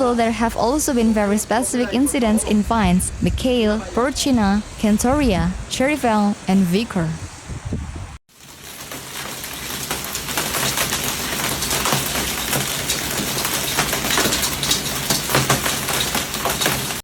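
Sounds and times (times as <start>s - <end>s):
hailstones pelting hard surfaces: 8.3s - 17.0s.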